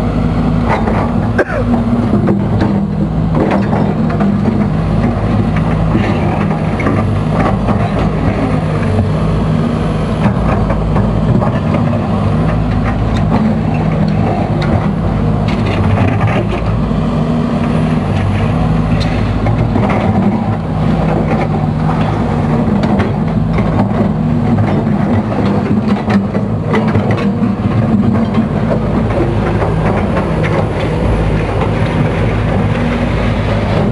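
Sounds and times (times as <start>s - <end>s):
excavator diesel engine running: 0.0s - 33.9s.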